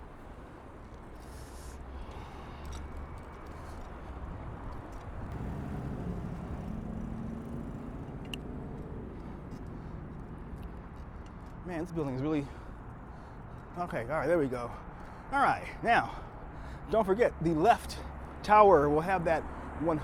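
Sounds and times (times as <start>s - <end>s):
city traffic rumble: 0.0s - 20.0s
passing vehicle engine hum: 0.3s - 13.5s.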